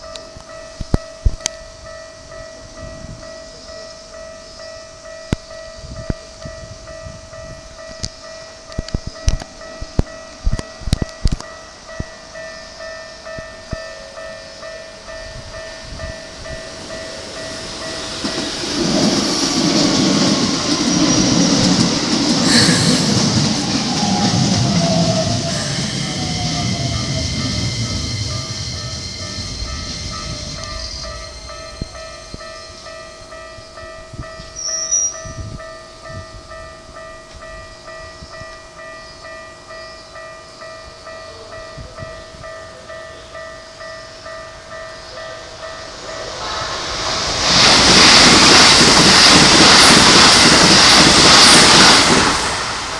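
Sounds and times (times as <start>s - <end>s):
electric train rumbling: 0.0s - 52.9s
train motor whine: 8.7s - 35.7s, 43.8s - 52.9s
level crossing alarm tone: 12.5s - 34.6s.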